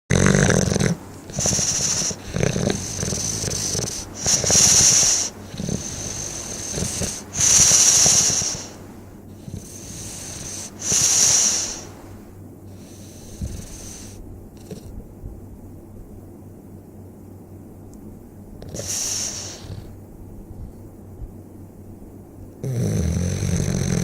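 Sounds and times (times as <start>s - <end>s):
snoring with rattling buzz: 0.1s - 15.0s, 18.6s - 20.0s, 22.6s - 24.0s.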